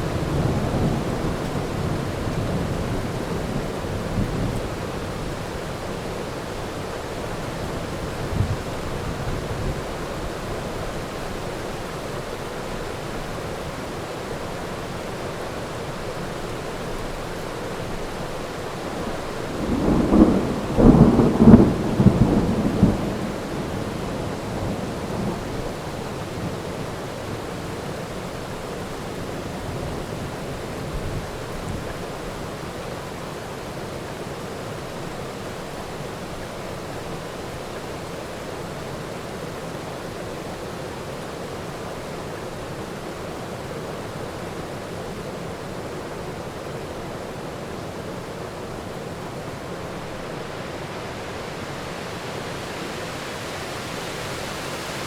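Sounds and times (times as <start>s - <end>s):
steady rain: 0.0s - 55.0s
thunder rumbling and crackling: 19.5s - 26.6s.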